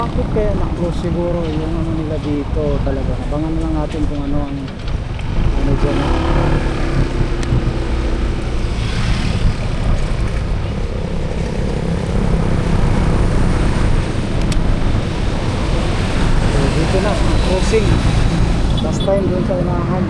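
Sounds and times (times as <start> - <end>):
vehicle engine and road noise: 0.0 - 20.0.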